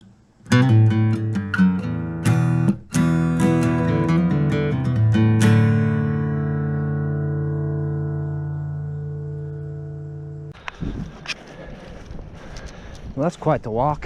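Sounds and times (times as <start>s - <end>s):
acoustic guitar chords: 0.0s - 10.8s.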